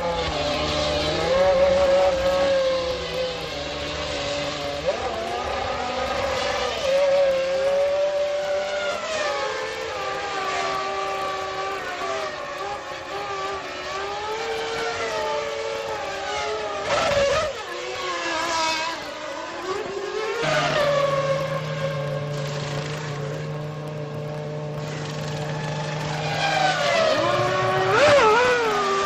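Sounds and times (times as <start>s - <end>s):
racing car engines revving: 0.0s - 29.0s.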